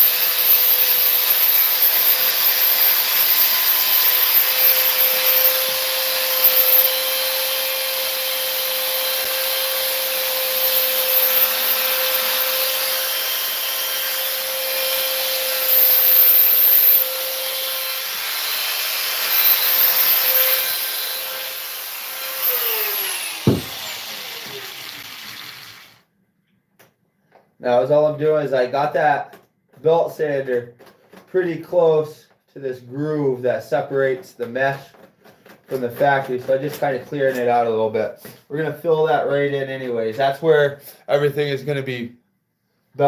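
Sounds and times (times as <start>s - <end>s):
belt sander grinding: 0.0s - 25.1s
single knock: 23.5s - 23.7s.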